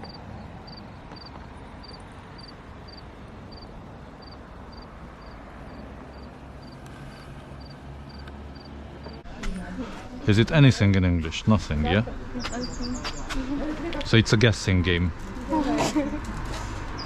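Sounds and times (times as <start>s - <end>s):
cricket chirping: 0.0s - 9.2s.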